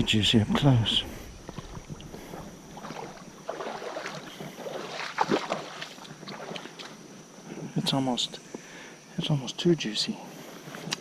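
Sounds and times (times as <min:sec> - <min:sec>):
creek water sloshing and splashing: 0:00.5 - 0:07.4.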